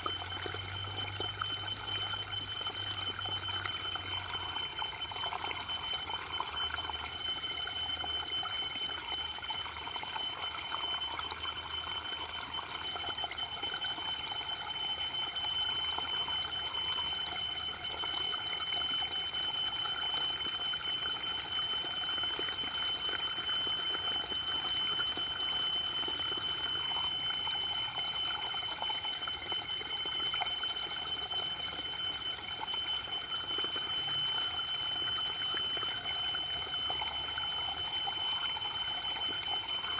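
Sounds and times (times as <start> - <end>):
high-pitched tones: 0.0 - 22.5.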